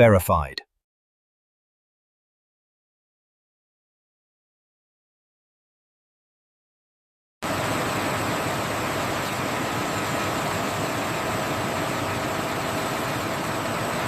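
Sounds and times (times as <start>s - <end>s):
machine hiss and hum: 7.4s - 14.0s.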